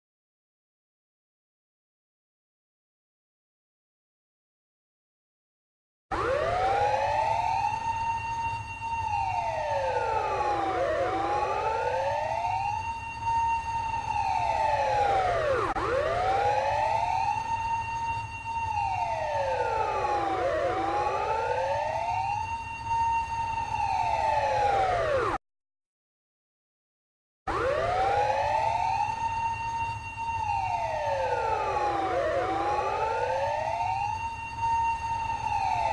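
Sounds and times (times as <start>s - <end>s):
ambulance siren wailing: 6.1s - 25.4s, 27.5s - 35.9s.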